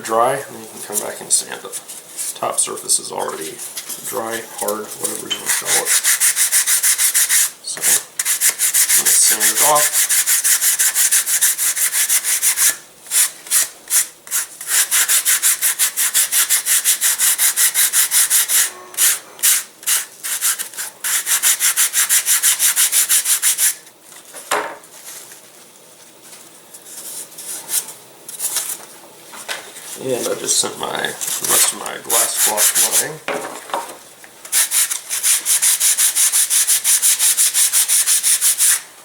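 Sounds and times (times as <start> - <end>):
sandpaper strokes: 3.5 - 23.8, 31.2 - 33.1, 34.5 - 38.8.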